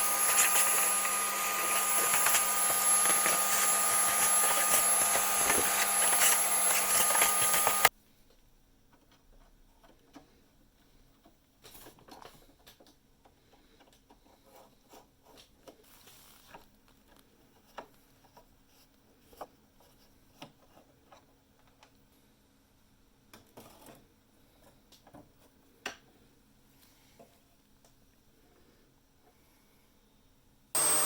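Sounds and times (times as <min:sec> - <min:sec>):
scratching and rubbing: 0:00.0 - 0:07.9.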